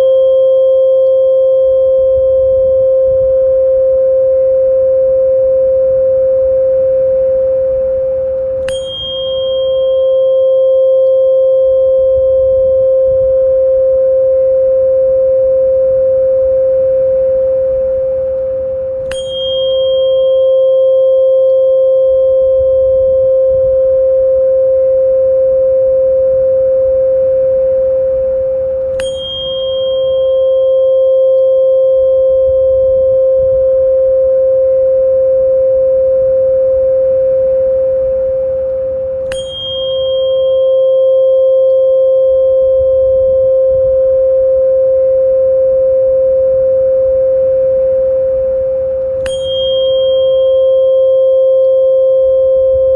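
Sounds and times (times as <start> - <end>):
sustained pure tone: 0.0 - 52.9
bright chime strike: 8.6 - 11.3, 19.0 - 21.7, 28.9 - 31.5, 39.2 - 41.8, 49.2 - 51.1.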